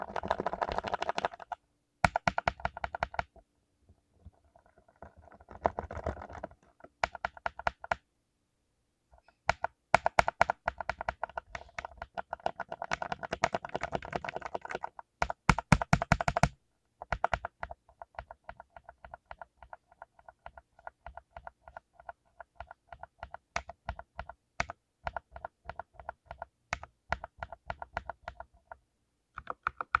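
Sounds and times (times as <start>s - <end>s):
mechanical keyboard key clicks: 29.4s - 30.0s.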